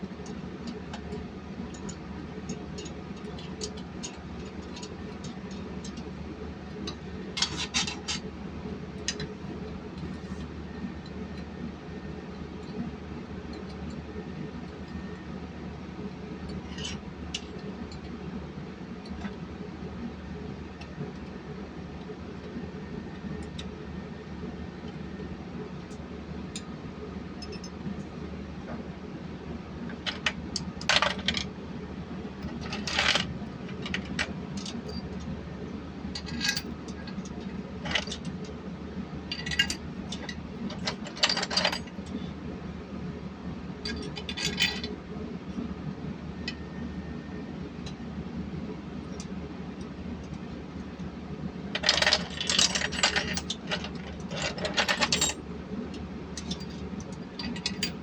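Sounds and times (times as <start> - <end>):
low machine hum: 0.0 - 58.0
metal tools clinking: 51.8 - 55.4, 57.4 - 58.0.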